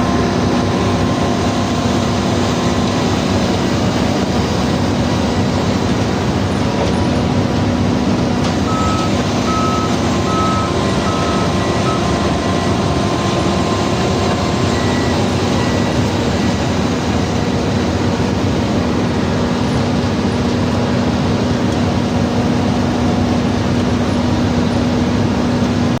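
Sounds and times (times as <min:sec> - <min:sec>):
heavy machinery engine hum: 0:00.0 - 0:26.0
reversing alarm beeps: 0:08.6 - 0:17.4.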